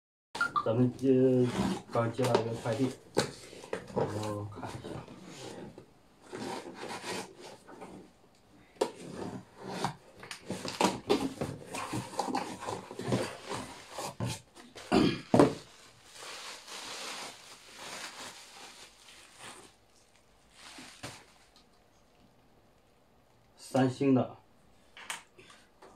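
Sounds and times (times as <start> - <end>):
packaging rustling and scraping: 0.6 - 8.2, 8.8 - 21.7.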